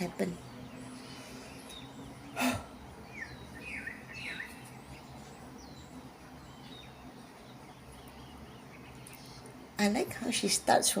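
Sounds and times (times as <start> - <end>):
small birds chirping: 0.0 - 11.0.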